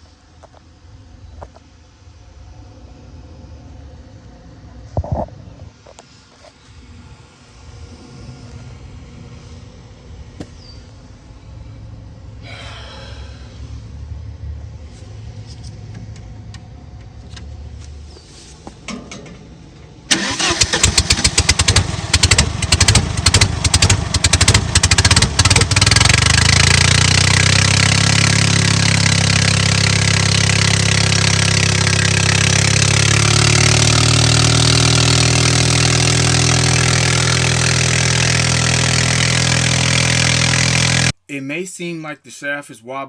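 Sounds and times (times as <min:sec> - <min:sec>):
skid steer engine starting and running: 0:20.1 - 0:41.2
low hum: 0:21.0 - 0:41.2.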